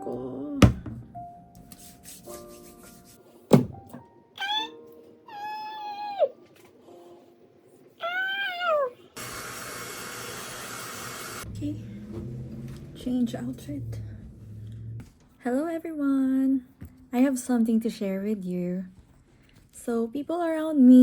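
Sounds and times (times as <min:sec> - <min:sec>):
soft background music: 0:00.0 - 0:09.1, 0:11.4 - 0:21.0
thunk: 0:03.5 - 0:04.0
cat meowing: 0:04.4 - 0:06.4, 0:08.0 - 0:09.1.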